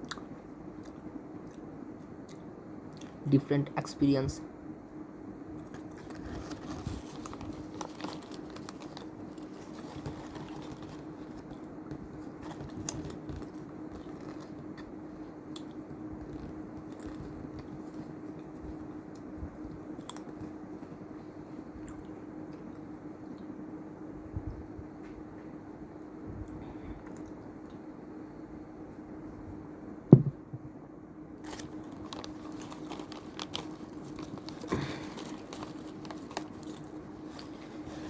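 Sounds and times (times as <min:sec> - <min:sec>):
steady low hum: 0:00.0 - 0:38.0
person chewing crunchy snack: 0:31.4 - 0:38.0.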